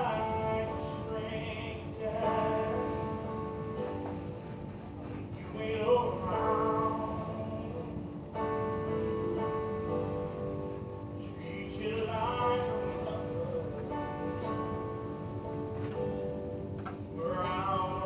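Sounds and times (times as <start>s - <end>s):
person singing: 0.0s - 3.4s, 5.3s - 8.0s, 11.2s - 14.7s, 17.2s - 18.0s.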